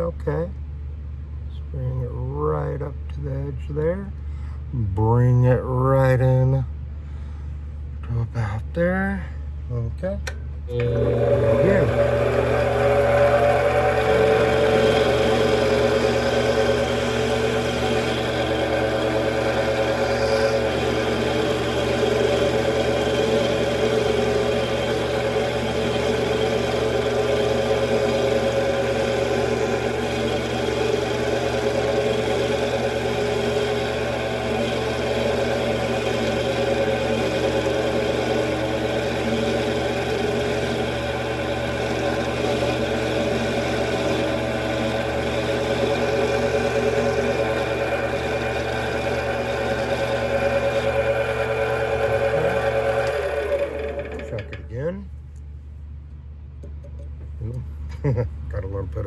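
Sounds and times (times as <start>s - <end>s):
metal lathe motor whine: 10.7s - 54.9s.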